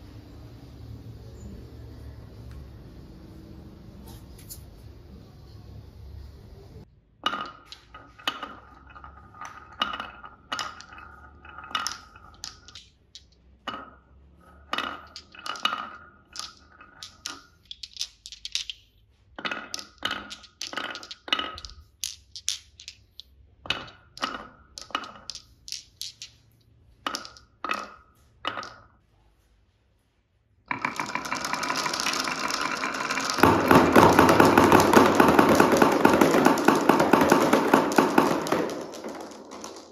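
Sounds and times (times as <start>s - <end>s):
marbles clicking down wooden run: 7.2s - 28.9s, 30.7s - 39.9s
many marbles rattling: 7.6s - 27.9s, 30.7s - 39.9s.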